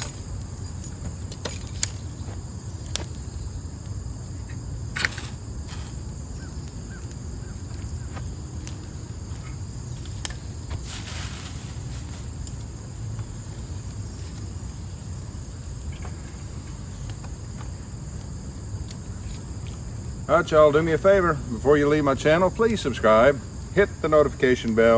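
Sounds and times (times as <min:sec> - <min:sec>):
high insect chorus: 0:00.0 - 0:24.9.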